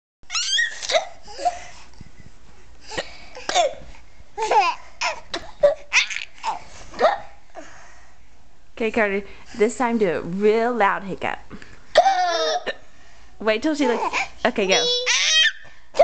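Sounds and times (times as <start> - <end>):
baby laughing: 4.4 - 6.6, 12.0 - 12.6, 14.0 - 16.0.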